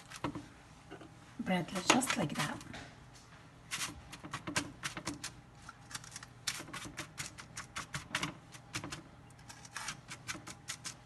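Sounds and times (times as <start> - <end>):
utensil scraping toasted bread: 9.4 - 11.0.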